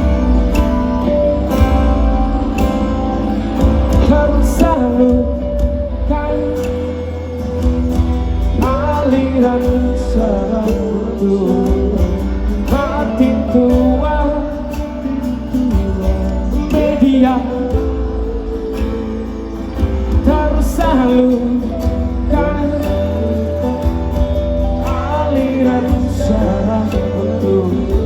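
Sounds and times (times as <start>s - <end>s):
guitar: 0.0s - 28.0s
heavy bass: 0.0s - 28.0s
person singing: 0.0s - 28.0s.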